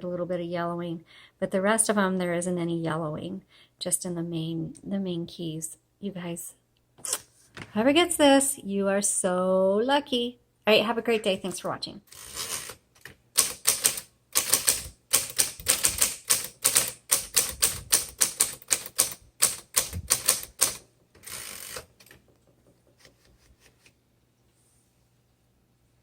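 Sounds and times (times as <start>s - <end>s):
typewriter carriage return: 12.1s - 12.8s, 13.4s - 22.3s
typewriter key strikes: 13.4s - 22.2s.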